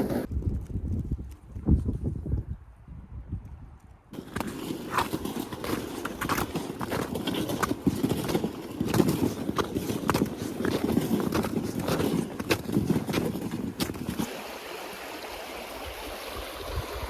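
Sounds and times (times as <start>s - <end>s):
footsteps crunching in snow: 4.2s - 14.3s.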